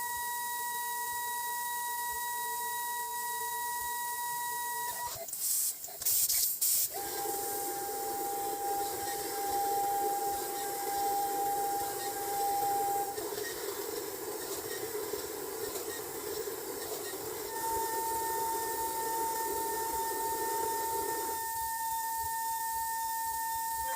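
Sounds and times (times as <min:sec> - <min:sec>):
milling machine spindle whine: 0:00.0 - 0:05.2, 0:06.9 - 0:23.9
sharp hissing bursts: 0:05.3 - 0:21.4.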